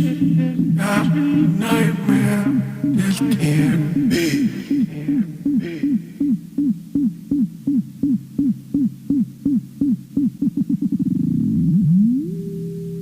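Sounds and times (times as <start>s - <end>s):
synth notes sweeping down in pitch: 10.5s - 13.0s.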